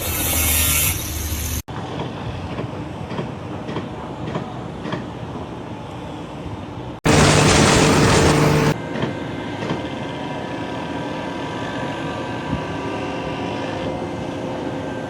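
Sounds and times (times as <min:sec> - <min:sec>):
heavy vehicle rumble: 0:07.1 - 0:08.8
loud hiss: 0:07.1 - 0:08.8.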